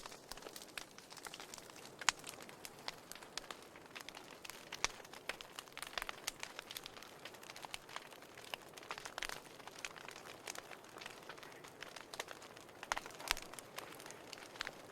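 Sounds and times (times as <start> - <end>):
wood fire crackling: 0.0 - 14.9.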